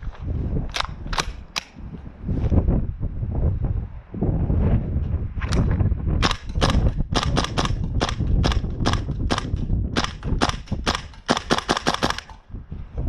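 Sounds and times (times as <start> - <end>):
airsoft rifle firing: 6.2 - 12.4.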